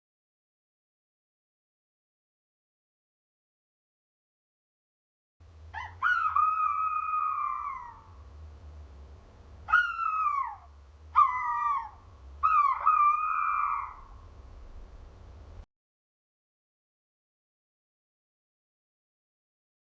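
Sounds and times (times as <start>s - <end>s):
owl calling: 5.7s - 8.2s, 9.6s - 14.3s.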